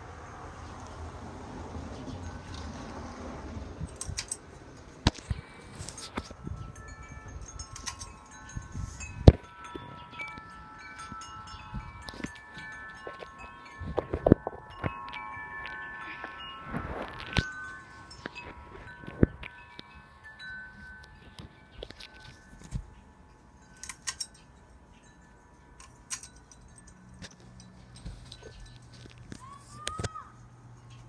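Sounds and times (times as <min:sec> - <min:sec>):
ringing chime tones: 0:05.4 - 0:29.0.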